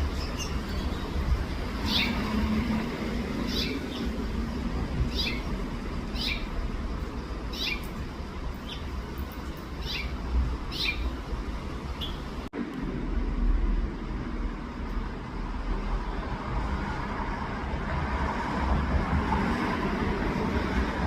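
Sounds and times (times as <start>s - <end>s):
finch chirping: 0.0s - 2.4s, 3.4s - 4.2s, 5.1s - 6.5s, 7.5s - 8.0s, 8.6s - 8.9s, 9.7s - 11.2s, 11.9s - 12.3s.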